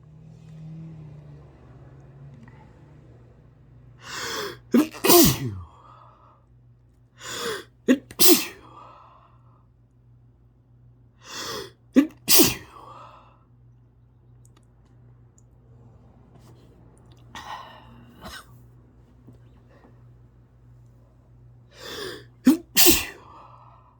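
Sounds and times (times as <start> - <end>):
person sneezing: 4.0 - 5.7, 7.2 - 8.7, 11.3 - 12.8, 17.4 - 18.5, 21.8 - 23.4.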